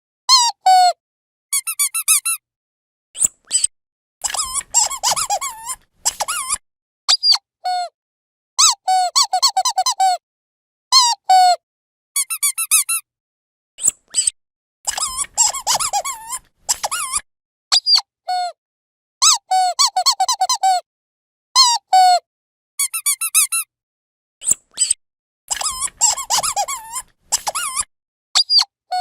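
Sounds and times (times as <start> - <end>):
squeaky dog toy squeaking: 0.3 - 2.4, 3.5 - 7.9, 8.6 - 10.2, 11.0 - 11.6, 12.2 - 13.0, 14.9 - 18.4, 19.2 - 20.8, 21.6 - 22.2, 22.8 - 23.7, 24.4 - 29.0.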